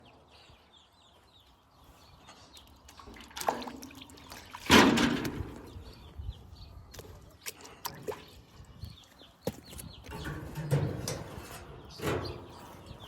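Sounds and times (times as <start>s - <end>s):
chicks peeping: 8.3s - 10.6s.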